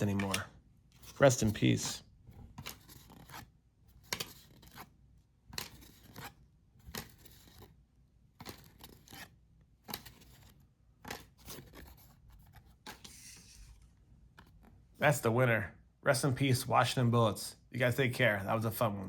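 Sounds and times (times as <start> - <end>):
cards sliding off a stack: 8.4 - 13.8.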